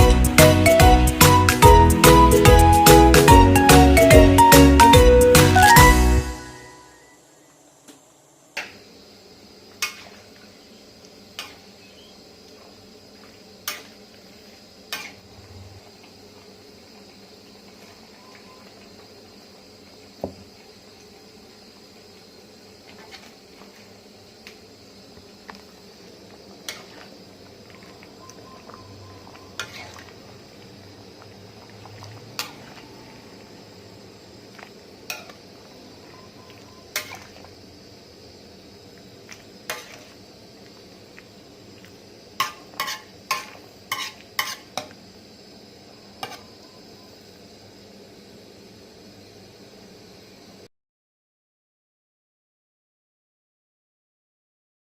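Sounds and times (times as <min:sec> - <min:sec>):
faint steady hiss: 0:00.0 - 0:50.7
soup bubbling on the boil: 0:08.6 - 0:49.8.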